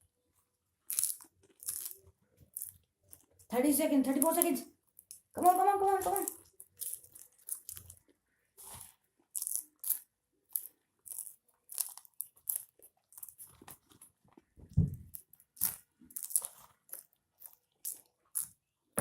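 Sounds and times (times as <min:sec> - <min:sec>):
people chewing popcorn: 0:00.8 - 0:03.5, 0:04.1 - 0:19.0
deep thump: 0:14.7 - 0:15.0.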